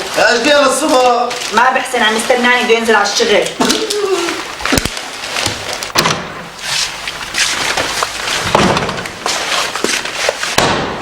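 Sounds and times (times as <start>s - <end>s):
rustling: 0.0s - 10.8s
knocks and clatter: 7.7s - 9.1s.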